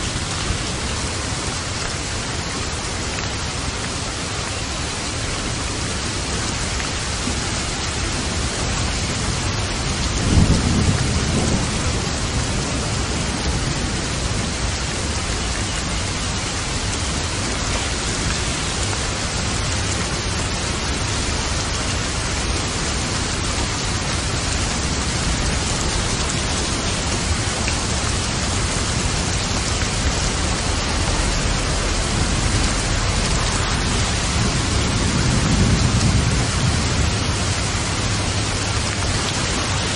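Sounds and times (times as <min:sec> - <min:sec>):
steady rain: 0:00.0 - 0:39.9
thunder rumbling: 0:08.0 - 0:15.7, 0:19.4 - 0:39.9.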